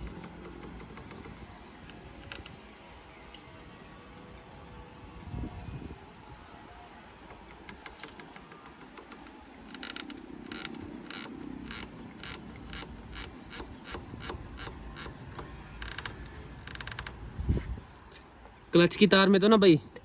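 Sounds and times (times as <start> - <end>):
clutch cable rasping and clicking: 0.0 - 3.7, 7.0 - 17.7.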